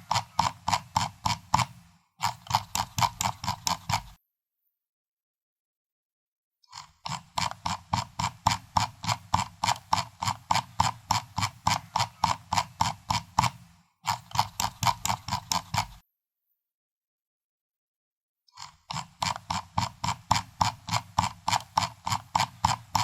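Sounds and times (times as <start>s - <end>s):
mouse scroll wheel clicking: 0.0s - 4.2s, 6.7s - 16.0s, 18.6s - 23.0s.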